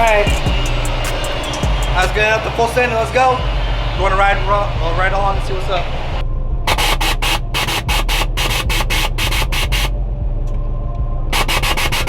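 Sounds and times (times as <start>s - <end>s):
car engine idling: 0.0s - 12.0s
rasping strokes: 6.7s - 10.0s, 11.4s - 12.0s.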